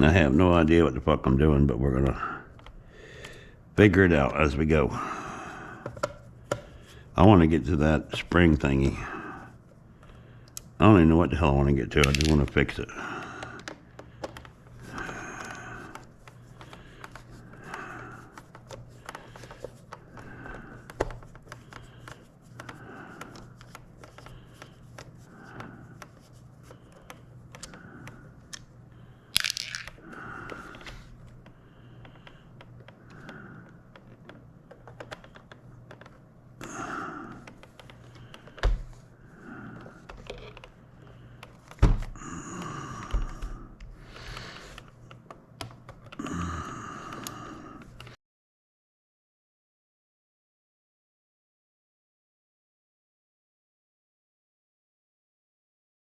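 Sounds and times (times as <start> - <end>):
plastic parts knocking: 5.8 - 6.8, 12.0 - 25.1, 29.4 - 36.2.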